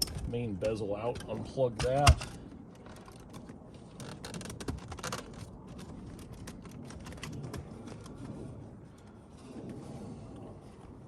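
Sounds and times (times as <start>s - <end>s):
plastic trim clicking and rattling: 0.0s - 8.1s.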